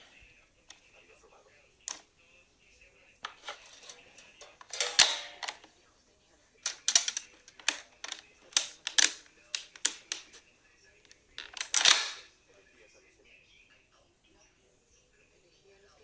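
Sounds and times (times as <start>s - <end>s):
rustling: 3.1s - 12.4s
plastic toy pieces clicking: 3.3s - 5.7s, 6.6s - 10.4s, 11.4s - 12.3s.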